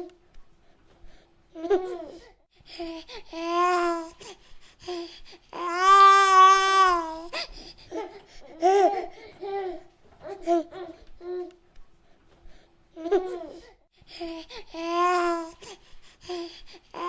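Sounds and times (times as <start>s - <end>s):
baby cooing and babbling: 2.8s - 4.3s, 4.9s - 11.6s, 14.3s - 15.7s, 16.3s - 17.0s.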